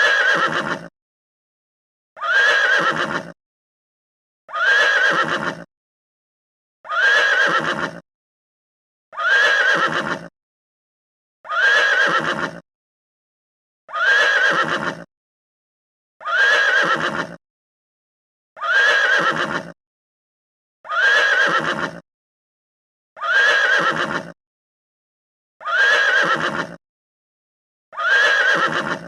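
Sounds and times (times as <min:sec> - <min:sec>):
horse whinnying: 0:00.0 - 0:00.9, 0:02.2 - 0:03.4, 0:04.5 - 0:05.7, 0:06.8 - 0:08.0, 0:09.1 - 0:10.3, 0:11.4 - 0:12.6, 0:13.9 - 0:15.1, 0:16.2 - 0:17.4, 0:18.6 - 0:19.8, 0:20.8 - 0:22.0, 0:23.2 - 0:24.4, 0:25.6 - 0:26.8, 0:27.9 - 0:29.0.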